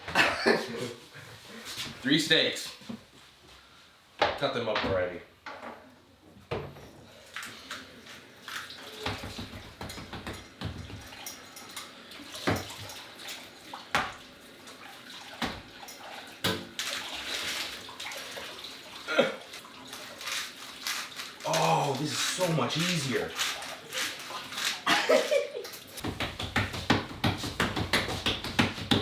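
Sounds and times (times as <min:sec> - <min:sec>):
water running: 0:06.7 - 0:29.0
sharp knocks and clatters: 0:09.1 - 0:11.2, 0:26.0 - 0:29.0.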